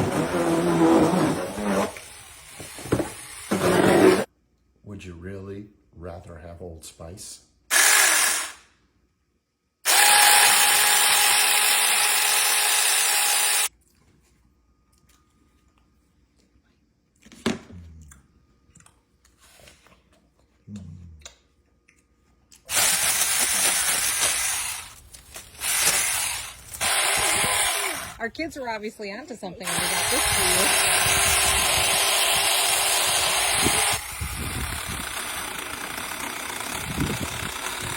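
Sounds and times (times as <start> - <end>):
small chainsaw running: 7.7 - 8.6, 9.9 - 13.7, 22.7 - 25.0, 25.6 - 28.2, 29.6 - 37.9.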